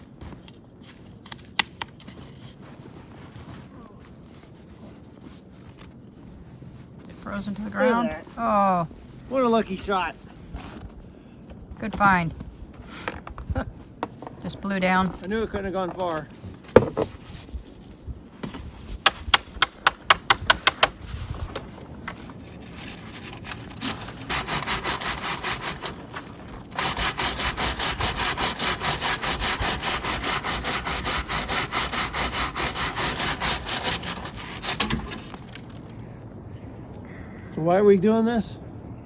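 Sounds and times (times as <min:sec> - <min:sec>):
sharp clicks: 0:19.1 - 0:21.0
brush scraping inside chimney pipe: 0:22.1 - 0:35.9.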